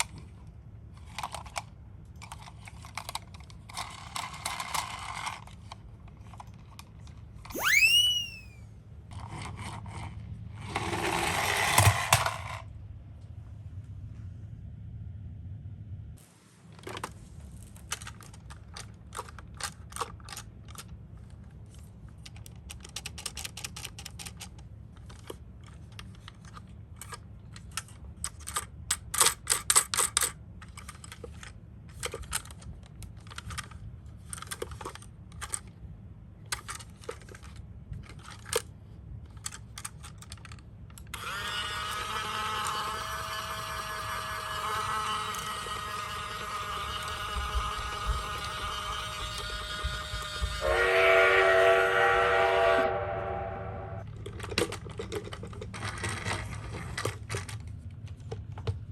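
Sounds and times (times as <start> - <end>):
toy cars clattering: 0.0 - 7.4, 9.1 - 12.7, 16.8 - 50.5, 54.0 - 58.9
toy electronic siren: 7.5 - 8.6, 41.2 - 50.8.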